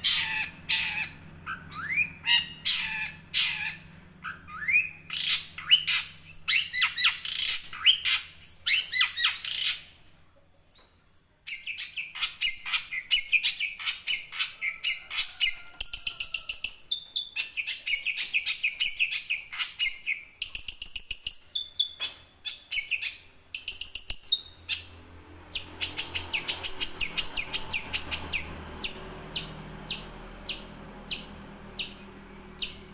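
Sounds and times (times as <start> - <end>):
shrike chattering song: 25.6 - 32.9.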